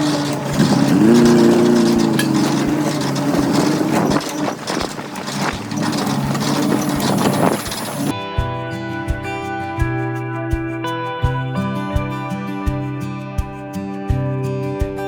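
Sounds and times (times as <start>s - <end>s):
engine running with knocks: 0.0s - 8.1s
guitar music: 0.0s - 15.0s.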